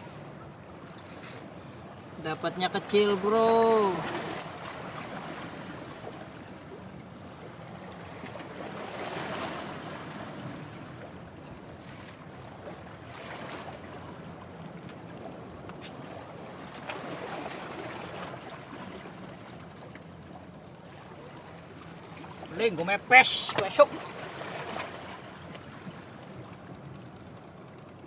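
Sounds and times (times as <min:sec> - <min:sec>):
sea waves washing onto shore: 0:02.2 - 0:05.9, 0:22.2 - 0:25.2.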